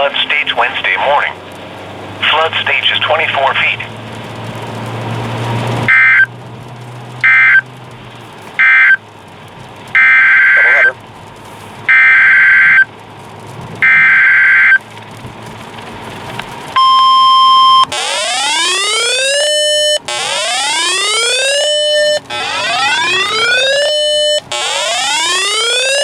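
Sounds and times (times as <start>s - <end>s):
screeching data bursts: 5.9s - 6.3s, 7.2s - 7.6s, 8.6s - 9.0s, 10.0s - 11.0s, 11.9s - 12.9s, 13.8s - 14.8s, 16.8s - 26.0s
siren-like wail: 5.9s - 6.3s, 7.2s - 7.6s, 8.6s - 9.0s, 10.0s - 11.0s, 11.9s - 12.9s, 13.8s - 14.8s, 16.8s - 26.0s
steady attention tone: 7.2s - 7.6s, 10.0s - 11.0s, 16.8s - 26.0s.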